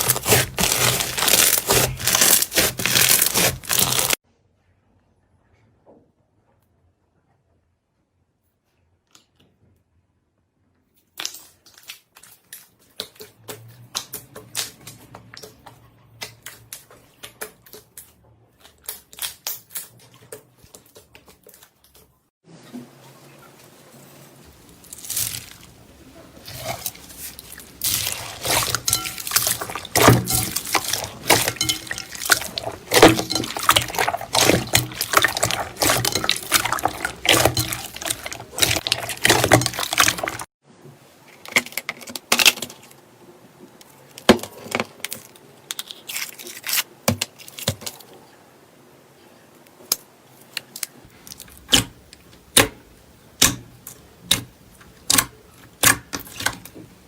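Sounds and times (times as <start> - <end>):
slime squelching by hand: 0.0 - 4.2, 24.5 - 40.5, 51.1 - 57.0.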